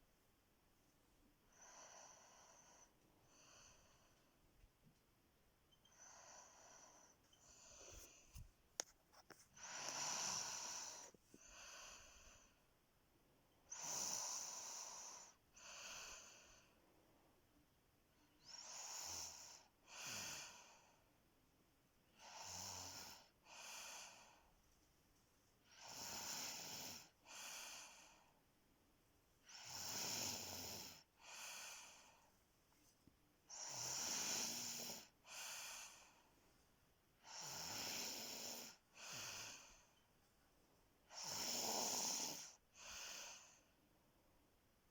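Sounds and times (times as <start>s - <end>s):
snoring: 9.6s - 12.2s, 13.7s - 16.6s, 18.4s - 20.8s, 22.2s - 24.3s, 25.7s - 28.2s, 29.5s - 32.2s, 33.5s - 36.1s, 37.2s - 39.8s, 41.1s - 43.6s.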